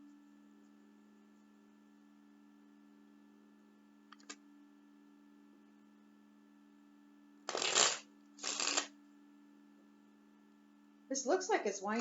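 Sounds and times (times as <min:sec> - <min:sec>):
cards shuffling: 0:07.5 - 0:08.9.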